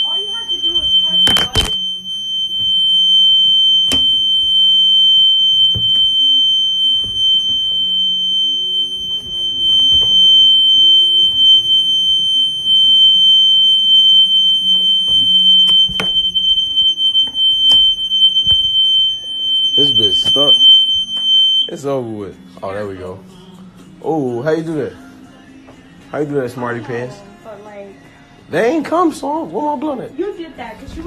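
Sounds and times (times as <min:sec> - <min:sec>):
smoke alarm tone: 0:00.0 - 0:21.8.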